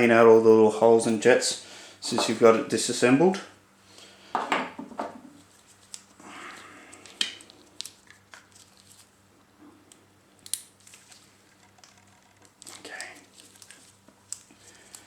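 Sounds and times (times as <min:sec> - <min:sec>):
soft rustling: 0:12.6 - 0:15.0.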